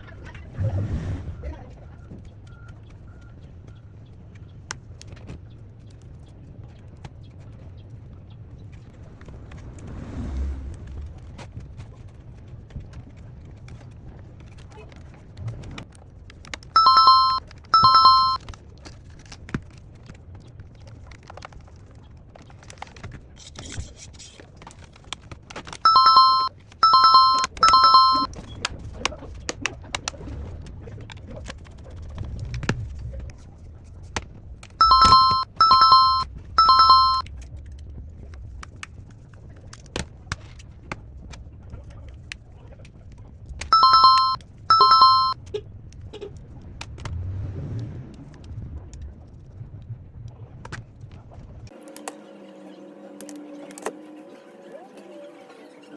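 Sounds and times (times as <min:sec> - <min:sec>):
electronic beeps: 0:16.8 - 0:18.4, 0:25.9 - 0:28.3, 0:34.8 - 0:37.2, 0:43.7 - 0:45.4.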